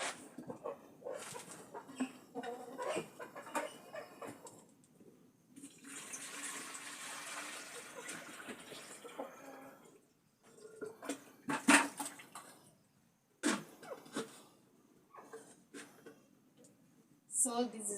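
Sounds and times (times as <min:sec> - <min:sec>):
chickens clucking: 0:00.0 - 0:04.8, 0:08.8 - 0:09.9.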